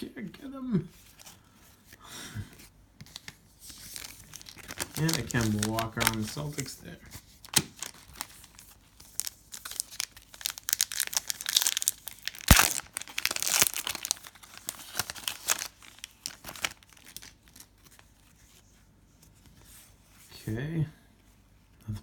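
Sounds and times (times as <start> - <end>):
wrapper tearing and crinkling: 3.7 - 6.8, 7.4 - 18.3.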